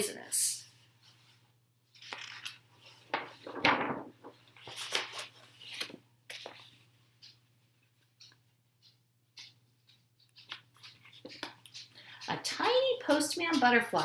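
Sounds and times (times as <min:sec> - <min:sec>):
book pages turning: 0:01.0 - 0:07.4, 0:10.4 - 0:11.9.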